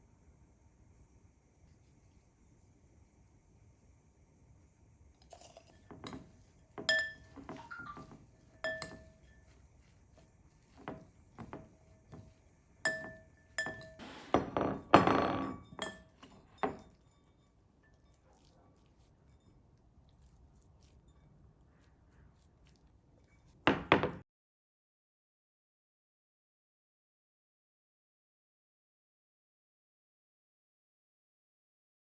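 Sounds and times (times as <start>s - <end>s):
dishes clinking: 5.3s - 9.6s, 10.6s - 18.5s.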